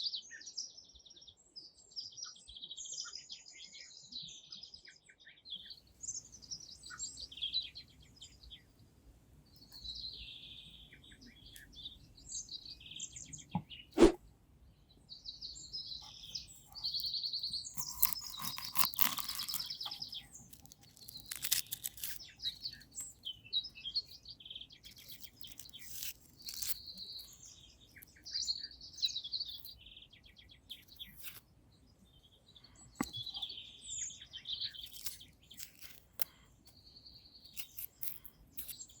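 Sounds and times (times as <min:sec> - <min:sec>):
small birds chirping: 0:00.0 - 0:39.0
crackling handling noise: 0:16.4 - 0:23.2, 0:24.8 - 0:28.2, 0:30.7 - 0:31.5, 0:34.6 - 0:36.8, 0:37.5 - 0:39.0.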